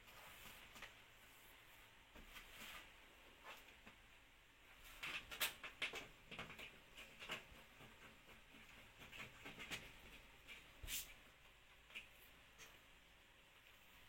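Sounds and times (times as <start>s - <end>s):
clicks and rustles of handling: 4.8s - 12.9s.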